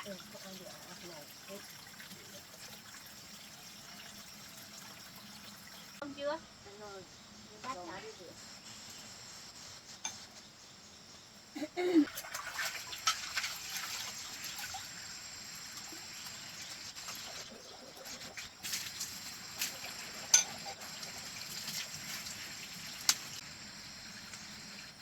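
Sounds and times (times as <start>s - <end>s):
water trickling and splashing: 0.0s - 6.0s, 11.8s - 25.0s
dishes clinking: 20.3s - 20.8s.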